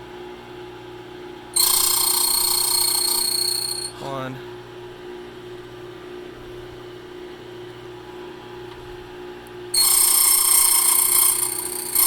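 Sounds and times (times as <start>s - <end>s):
cutter grinding metal key: 1.6s - 4.0s, 9.8s - 12.0s.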